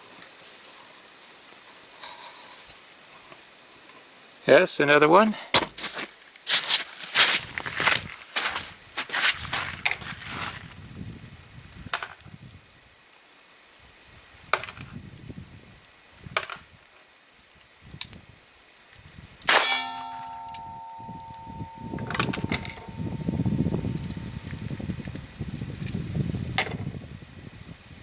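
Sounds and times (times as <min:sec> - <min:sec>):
ringing metallic clang: 0:19.5 - 0:24.5.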